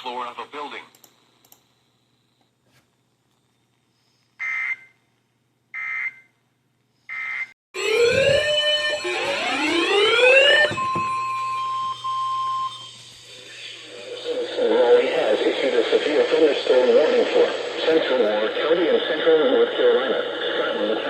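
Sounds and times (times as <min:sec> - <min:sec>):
alarm with rising pitch sweeps: 0:07.8 - 0:13.3.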